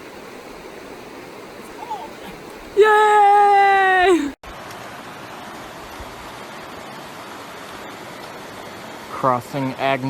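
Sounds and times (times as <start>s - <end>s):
creek water rushing: 0.0s - 10.0s
person cheering: 1.8s - 4.4s.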